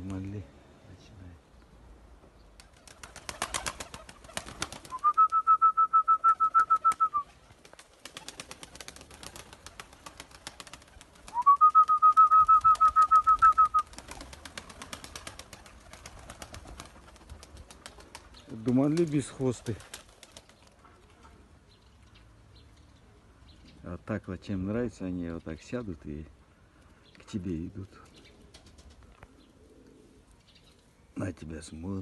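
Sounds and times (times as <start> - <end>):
pigeons clapping wings: 2.6 - 20.8, 28.5 - 29.0
loud trilled whistle: 5.0 - 7.2.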